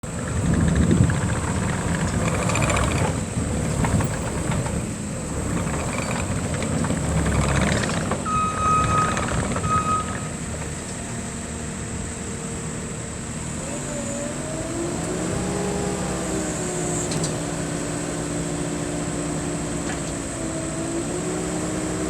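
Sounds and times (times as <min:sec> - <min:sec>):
loader diesel engine running: 0:00.0 - 0:22.0
beeps: 0:08.3 - 0:10.3.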